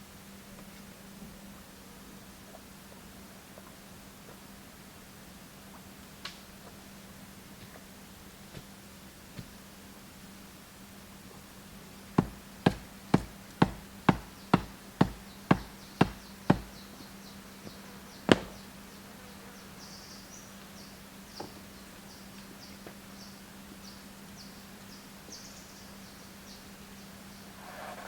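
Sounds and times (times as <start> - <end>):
steady low hum: 0.0 - 28.0
insects chirping: 6.8 - 27.9
sharp tool strikes: 18.3 - 18.6.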